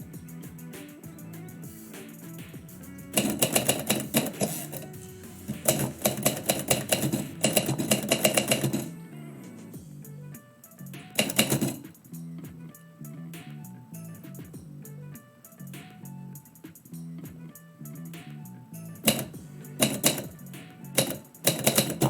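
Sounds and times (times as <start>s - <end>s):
typewriter keys clattering: 3.2s - 4.9s, 5.5s - 8.9s, 11.2s - 11.8s, 19.1s - 20.3s, 21.0s - 22.0s.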